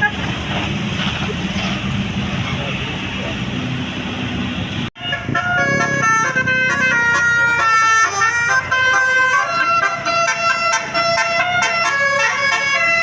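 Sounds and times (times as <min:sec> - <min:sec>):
bus horn playing a melody: 0:00.0 - 0:00.4, 0:05.0 - 0:13.0.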